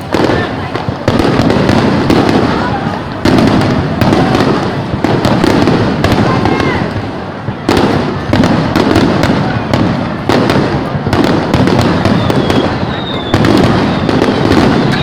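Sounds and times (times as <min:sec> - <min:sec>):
fireworks bangs and crackles: 0:00.0 - 0:15.0
loud firework reports: 0:00.0 - 0:15.0
whistle of rising shell: 0:12.1 - 0:15.0.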